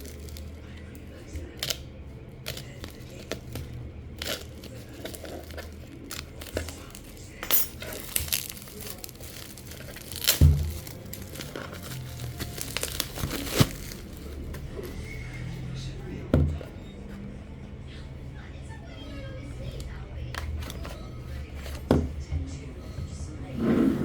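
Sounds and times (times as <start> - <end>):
packaging crinkling: 2.4 - 15.1.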